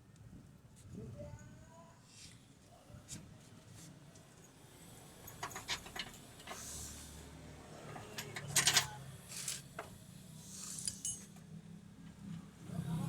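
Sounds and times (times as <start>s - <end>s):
metal tools clicking and clanking: 5.3s - 6.9s, 7.9s - 9.6s, 10.8s - 11.4s.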